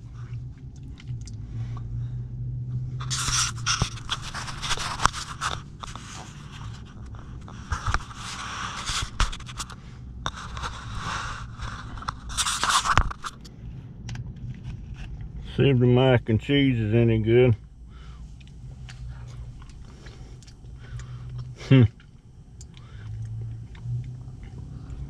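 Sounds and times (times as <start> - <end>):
low steady hum: 0.0 - 25.0
plastic containers scraping and rustling: 3.0 - 13.4.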